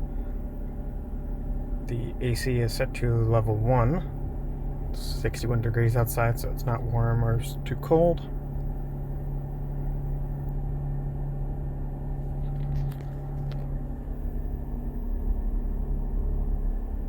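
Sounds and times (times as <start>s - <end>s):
car engine droning: 0.0s - 17.0s.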